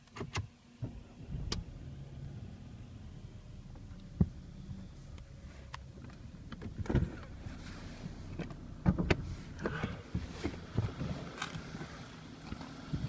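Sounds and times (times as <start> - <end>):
car engine idling: 0.7 - 13.0
sharp engine knocks and clicks: 8.3 - 13.0.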